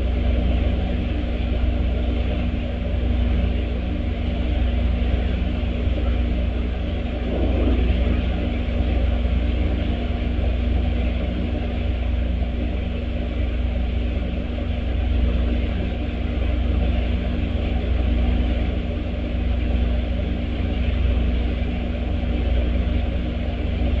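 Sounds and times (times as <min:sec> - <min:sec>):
mechanical hum: 0:00.0 - 0:24.0
low rumble: 0:06.4 - 0:10.9.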